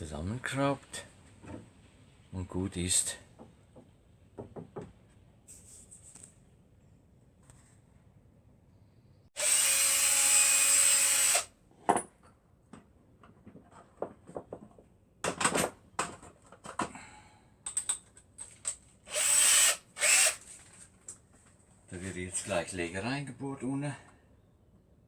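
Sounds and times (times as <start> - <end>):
drill motor running: 9.4 - 11.5, 19.1 - 20.4
drill clicks and knocks: 19.1 - 20.5.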